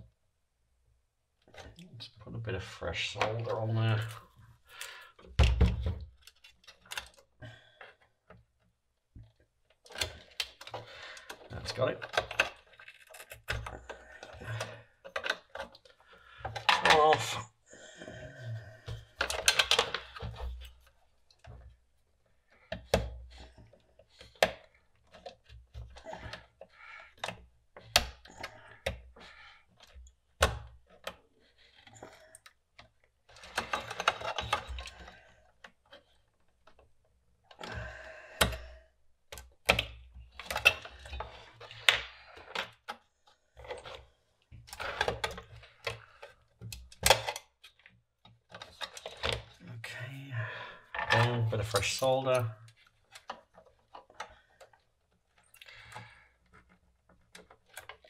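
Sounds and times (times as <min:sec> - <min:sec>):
tools clicking and knocking: 0:09.2 - 0:17.4, 0:18.9 - 0:21.7.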